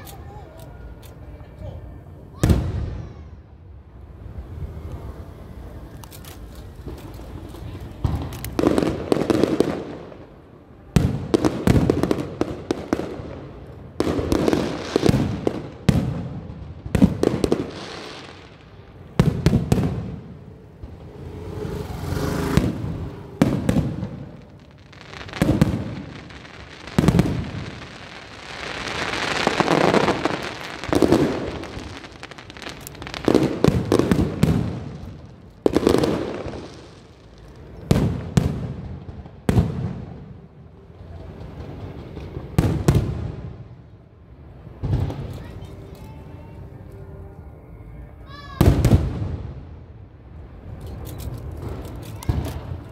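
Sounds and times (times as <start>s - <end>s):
fireworks crackling: 0.0s - 47.2s, 50.4s - 52.9s
fireworks bursting: 6.4s - 43.9s.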